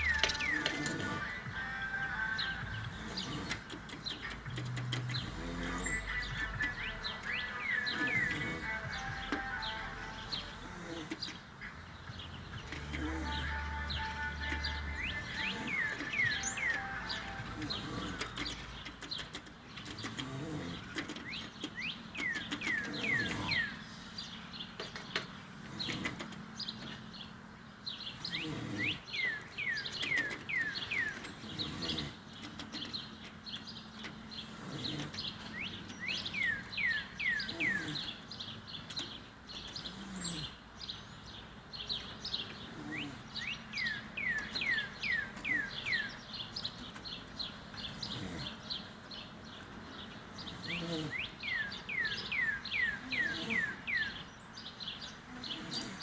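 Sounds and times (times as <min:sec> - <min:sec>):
man snoring: 0:00.0 - 0:03.8, 0:04.8 - 0:11.3, 0:12.5 - 0:18.6
bird singing whistles: 0:05.8 - 0:10.5, 0:13.4 - 0:18.6.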